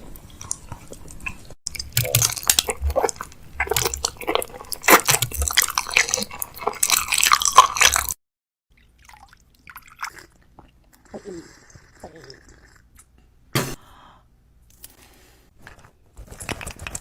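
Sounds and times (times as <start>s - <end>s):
packaging crinkling and clicking: 15.7s - 17.0s.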